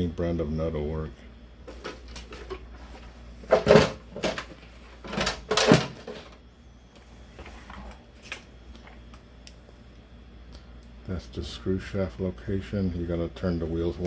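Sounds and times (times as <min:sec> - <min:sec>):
handling knocks and rustles: 0:01.6 - 0:06.4.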